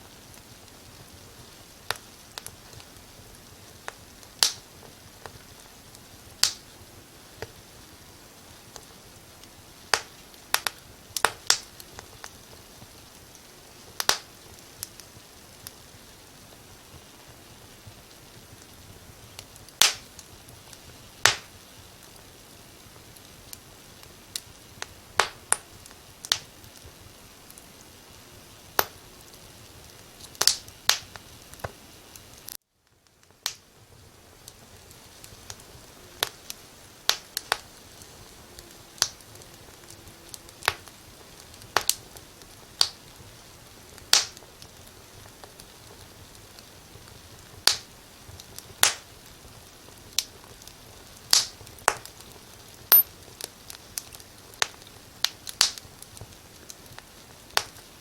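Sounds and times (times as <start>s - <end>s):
faint steady hiss: 0.0s - 58.0s
wood fire crackling: 0.0s - 58.0s.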